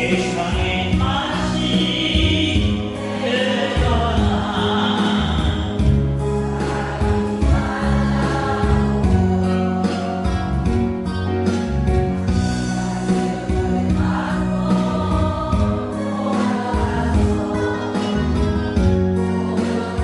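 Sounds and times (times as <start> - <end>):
group singing pop song: 0.0 - 10.4, 12.3 - 20.0
backing track with bass line: 0.0 - 20.0.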